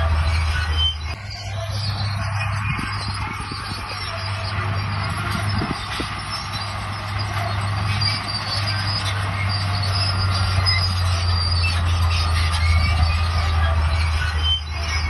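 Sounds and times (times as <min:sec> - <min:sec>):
diesel engine droning: 0:00.0 - 0:15.0
steel tracks squeaking: 0:00.0 - 0:15.0.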